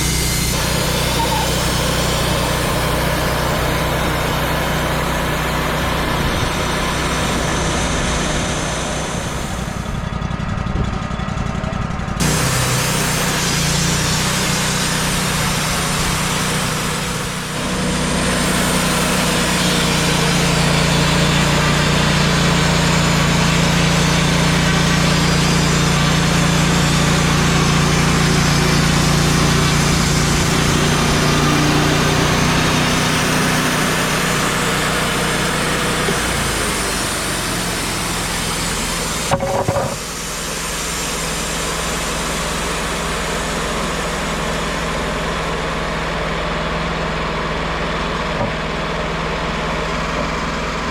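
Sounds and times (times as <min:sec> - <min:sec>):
band sawmill cutting log: 0:00.0 - 0:50.9
knock: 0:39.3 - 0:40.0.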